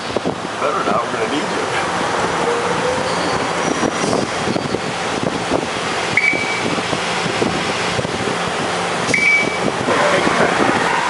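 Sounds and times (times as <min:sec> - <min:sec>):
machine shop machinery noise: 0:00.0 - 0:11.0
short high beeps: 0:06.2 - 0:06.7, 0:09.1 - 0:09.6.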